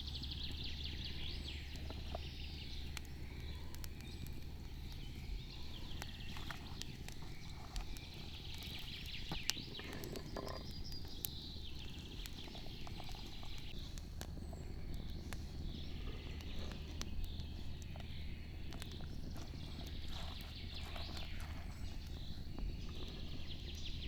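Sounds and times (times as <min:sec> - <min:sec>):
wood fire crackling: 0:00.0 - 0:24.0
sharp pops and snaps: 0:00.1 - 0:24.0.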